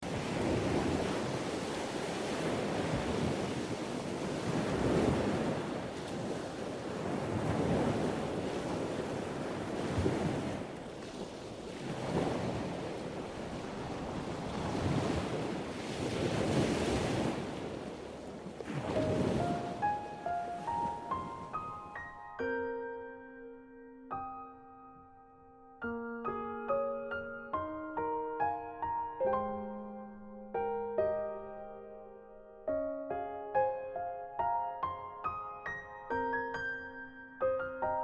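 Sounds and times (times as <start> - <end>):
wind buffeting microphone: 0.0 - 21.8
sea waves washing in: 0.0 - 22.1.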